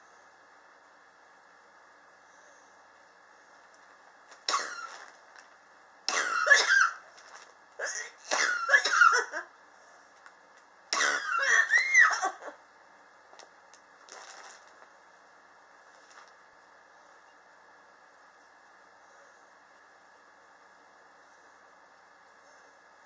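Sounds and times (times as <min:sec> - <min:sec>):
person coughing: 0:04.5 - 0:05.0, 0:06.1 - 0:07.0, 0:07.8 - 0:09.5, 0:11.0 - 0:12.6.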